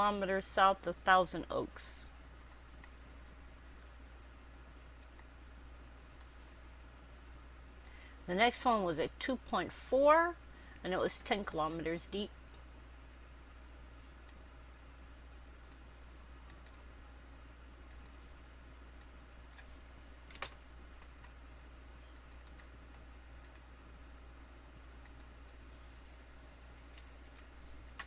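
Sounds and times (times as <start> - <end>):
low steady hum: 0.0 - 28.0
keyboard and mouse clicking: 5.0 - 5.3, 16.5 - 16.8, 17.9 - 18.2, 22.2 - 22.7, 23.4 - 23.7, 25.0 - 25.3.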